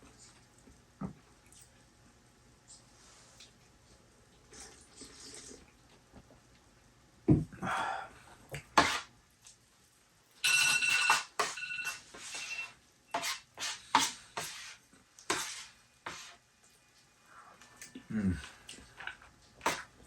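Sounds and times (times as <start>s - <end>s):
utensil scraping a dish: 8.8s - 9.1s, 10.9s - 16.4s
ringing metallic clink: 10.4s - 11.9s.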